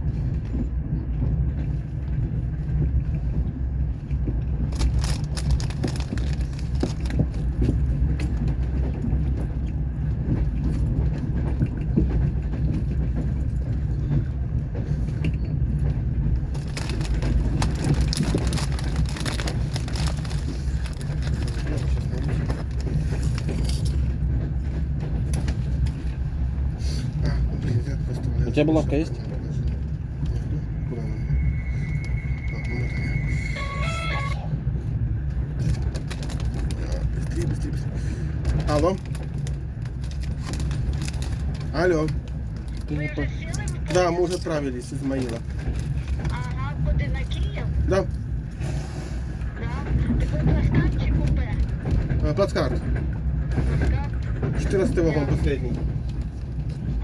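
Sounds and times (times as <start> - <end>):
train rumbling: 0.0 - 57.0
wheels rattling and clicking: 0.0 - 57.0.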